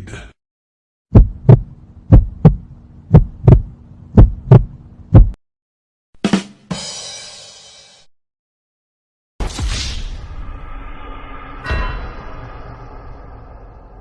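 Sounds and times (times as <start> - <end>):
heartbeat thumps: 1.1 - 5.4
faint steady hum: 1.2 - 5.4
short hit: 9.4 - 14.0.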